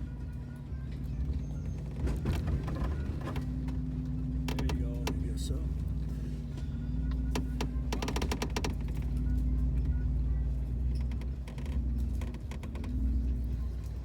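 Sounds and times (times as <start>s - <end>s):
tires and suspension clicking on rock: 0.0s - 6.0s, 7.0s - 14.0s
off-road engine running low: 0.0s - 14.0s.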